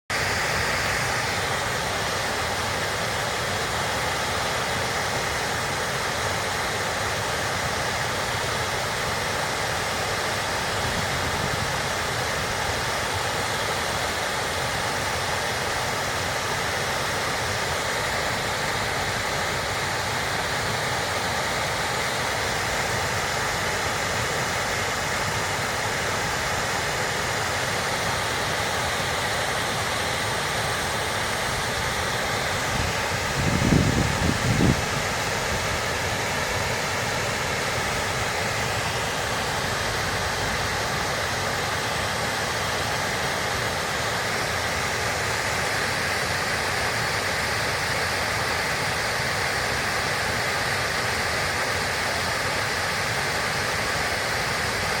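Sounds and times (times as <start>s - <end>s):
water rushing over a dam: 0.1s - 55.0s.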